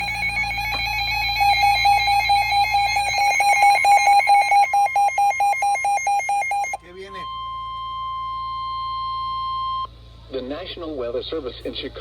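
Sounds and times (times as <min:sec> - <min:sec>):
steady alert tone: 0:00.0 - 0:07.6
rapid electronic beeping: 0:00.0 - 0:09.0.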